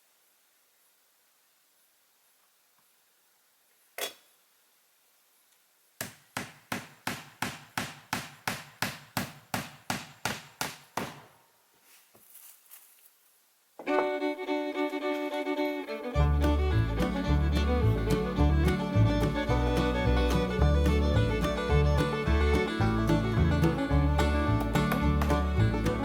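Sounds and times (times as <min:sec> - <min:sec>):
bluegrass music with fiddle: 0:13.8 - 0:26.0.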